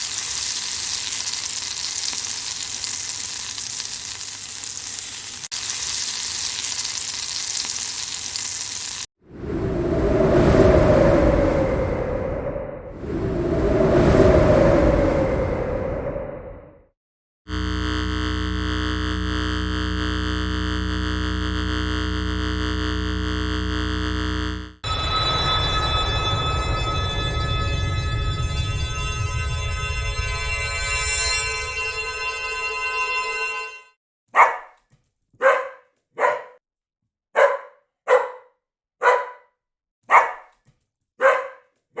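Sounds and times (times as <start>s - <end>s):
buzzing electronic drone: 17.5s - 33.9s
dog barking: 34.4s - 34.8s, 35.4s - 36.6s, 37.4s - 40.6s, 41.2s - 42.0s.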